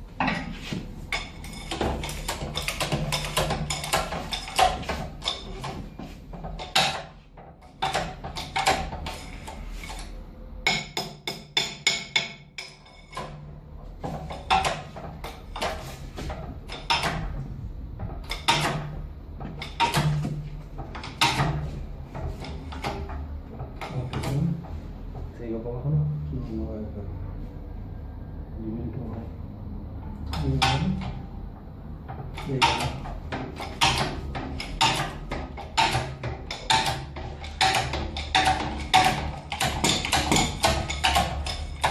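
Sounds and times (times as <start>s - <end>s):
hammer striking metal: 10.6s - 13.4s.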